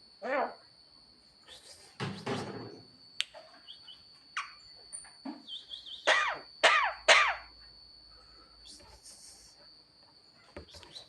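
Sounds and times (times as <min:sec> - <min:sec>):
myna bird calling: 0:05.4 - 0:07.5.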